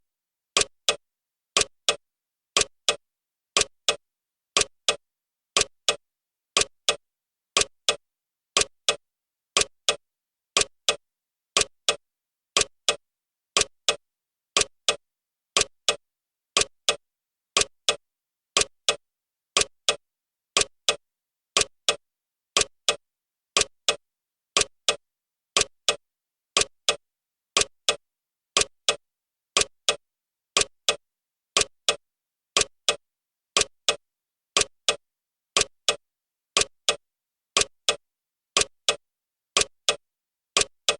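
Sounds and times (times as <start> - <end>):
clock ticking: 0.6 - 1.0, 1.6 - 2.0, 2.6 - 3.0, 3.6 - 4.0, 4.6 - 5.0, 5.6 - 6.0, 6.6 - 7.0, 7.6 - 8.0, 8.6 - 9.0, 9.6 - 10.0, 10.6 - 11.0, 11.6 - 12.0, 12.6 - 13.0, 13.6 - 14.0, 14.6 - 15.0, 15.6 - 16.0, 16.6 - 17.0, 17.6 - 18.0, 18.6 - 19.0, 19.6 - 20.0, 20.6 - 21.0, 21.6 - 22.0, 22.6 - 23.0, 23.6 - 24.0, 24.6 - 25.0, 25.6 - 26.0, 26.6 - 27.0, 27.6 - 28.0, 28.6 - 29.0, 29.6 - 30.0, 30.6 - 31.0, 31.6 - 32.0, 32.6 - 33.0, 33.6 - 34.0, 34.6 - 35.0, 35.6 - 36.0, 36.6 - 37.0, 37.6 - 38.0, 38.6 - 39.0, 39.6 - 40.0, 40.6 - 40.9.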